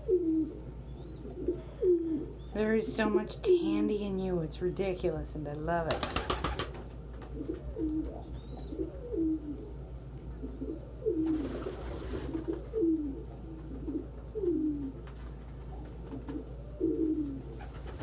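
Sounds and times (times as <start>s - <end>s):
pigeons cooing: 0.0s - 3.2s, 6.0s - 18.0s.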